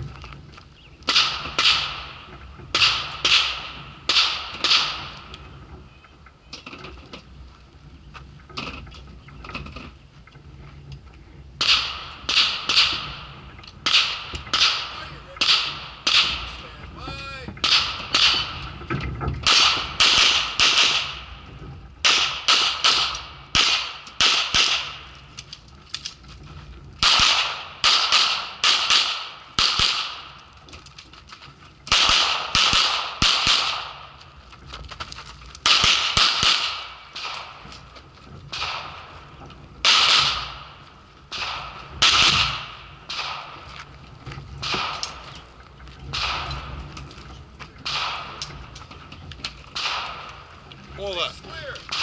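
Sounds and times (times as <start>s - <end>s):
echoing handgun shots: 1.1s - 5.1s, 11.6s - 16.6s, 17.6s - 18.8s, 19.4s - 21.4s, 22.0s - 25.1s, 27.0s - 30.4s, 31.9s - 34.1s, 35.6s - 37.6s, 38.5s - 39.2s, 39.8s - 43.6s, 44.6s - 45.2s, 46.1s - 46.7s, 47.8s - 48.4s, 49.8s - 50.4s.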